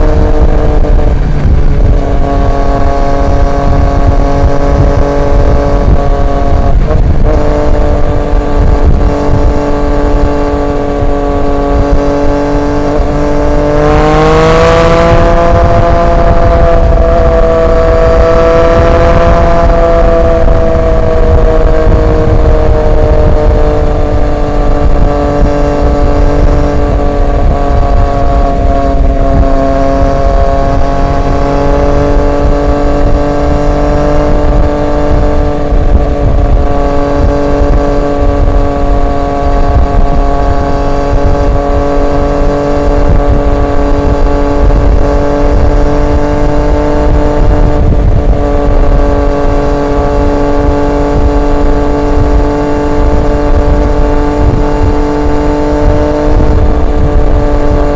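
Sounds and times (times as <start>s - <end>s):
motorcycle engine cruising: 0.0s - 57.9s
wind and road noise: 0.0s - 57.9s.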